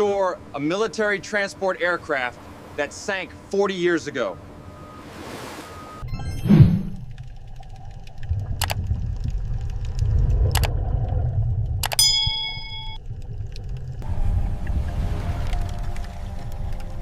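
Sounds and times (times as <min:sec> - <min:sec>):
low steady rumble: 0:05.8 - 0:17.0
sharp clicks: 0:07.1 - 0:09.0, 0:09.6 - 0:10.8, 0:11.8 - 0:12.2
metallic clang ringing: 0:11.9 - 0:13.0.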